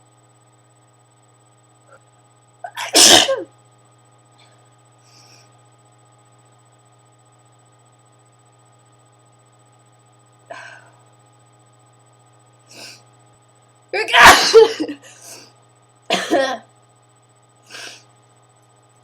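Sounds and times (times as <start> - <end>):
person sneezing: 2.7 - 3.5, 14.1 - 15.5, 17.7 - 18.0.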